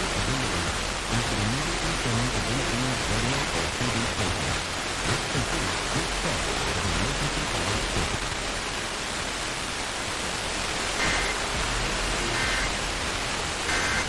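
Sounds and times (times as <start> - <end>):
radio static hiss: 0.0 - 14.0
two-tone data code warble: 11.0 - 14.0.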